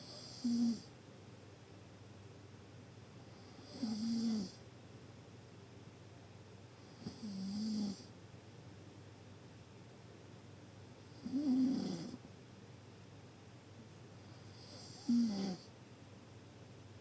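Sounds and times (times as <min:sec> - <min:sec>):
deep snoring: 0:00.0 - 0:00.9, 0:03.5 - 0:04.6, 0:07.0 - 0:08.1, 0:11.1 - 0:12.2, 0:14.4 - 0:15.7.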